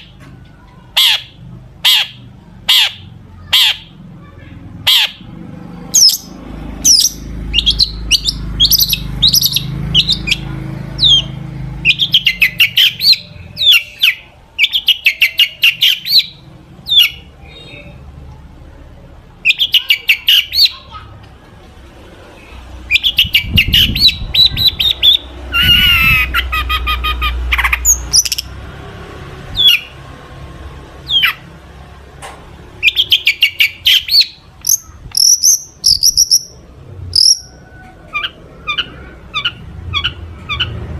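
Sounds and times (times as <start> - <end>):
bird singing chattering trills: 6.0 - 18.0, 22.9 - 28.5, 32.8 - 37.6
harsh buzzy bird call: 32.8 - 37.6.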